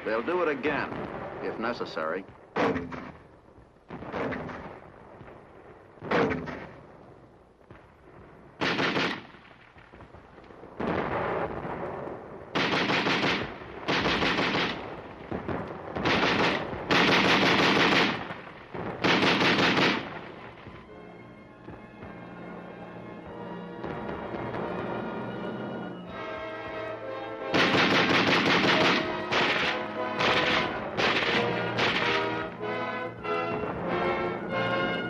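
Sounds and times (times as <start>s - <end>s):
heavy gunshots with ringing tail: 0.0s - 3.3s, 3.9s - 5.2s, 6.0s - 6.8s, 8.6s - 9.6s, 10.8s - 20.6s, 27.5s - 32.8s
faint music: 0.0s - 8.8s, 14.8s - 35.0s
machine-gun fire bursts: 8.6s - 9.4s, 12.5s - 20.4s, 27.5s - 32.5s.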